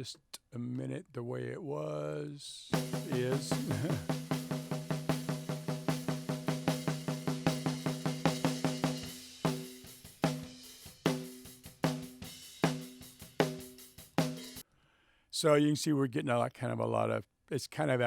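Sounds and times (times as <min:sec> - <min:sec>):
hi-hat and cymbal: 0:02.7 - 0:14.6
snare drum hits: 0:02.8 - 0:10.5.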